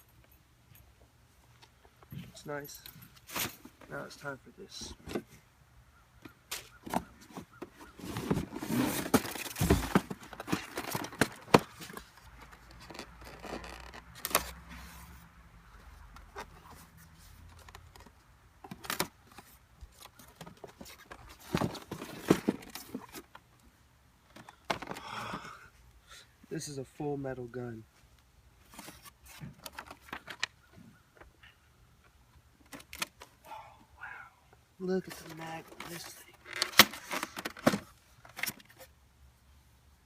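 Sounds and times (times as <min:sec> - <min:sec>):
handling clicks and knocks: 0:06.2 - 0:14.6, 0:35.1 - 0:38.9.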